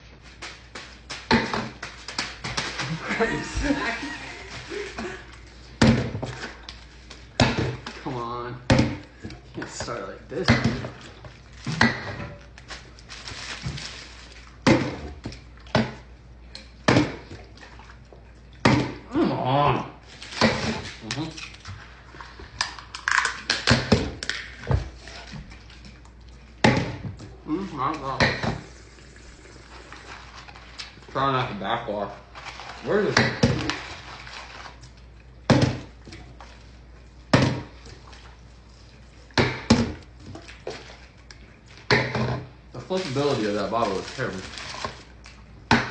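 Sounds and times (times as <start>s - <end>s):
rustling: 12.6s - 14.5s, 42.8s - 45.2s
plastic bottle crackling: 42.8s - 45.9s.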